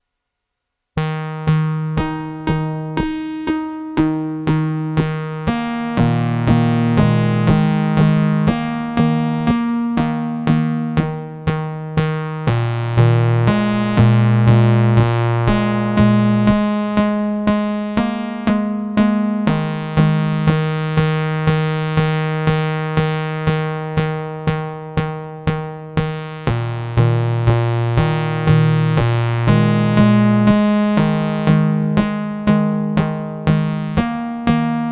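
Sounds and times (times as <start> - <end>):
plucked synthesizer notes: 1.0 - 34.9
low bass notes: 12.5 - 17.0.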